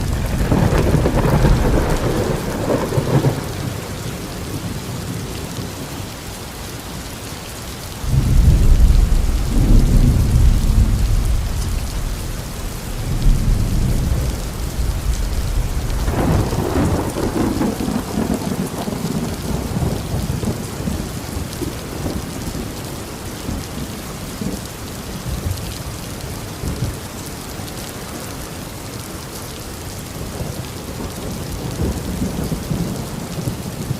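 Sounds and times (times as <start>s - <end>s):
rolling thunder: 0.0s - 5.4s, 8.0s - 22.7s
heavy rain: 0.0s - 33.9s.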